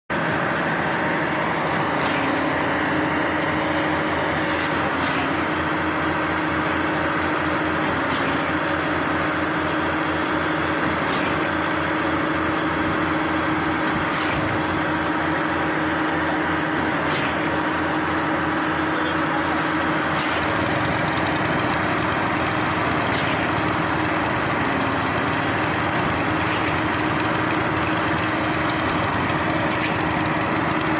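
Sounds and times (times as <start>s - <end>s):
engine running steadily: 0.1s - 30.9s.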